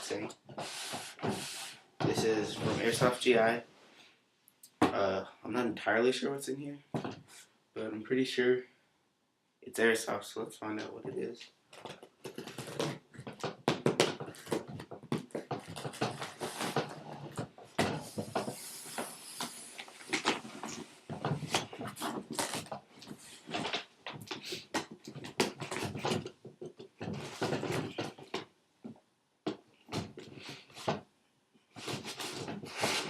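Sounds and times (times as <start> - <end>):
cardboard box being unpacked: 13.6 - 23.4
packing paper rustling: 17.9 - 23.8.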